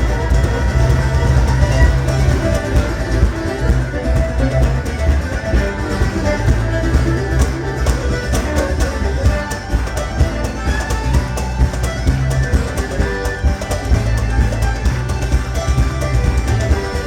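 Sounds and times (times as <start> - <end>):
upbeat fiddle and guitar music: 0.0 - 17.0.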